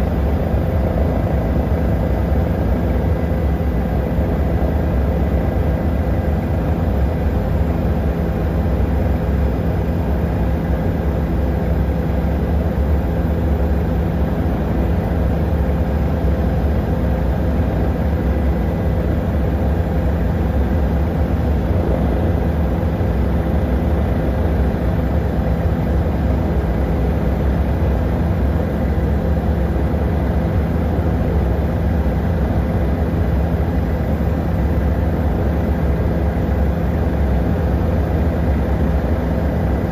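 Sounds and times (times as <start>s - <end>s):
helicopter engine and rotor drone: 0.0s - 39.9s.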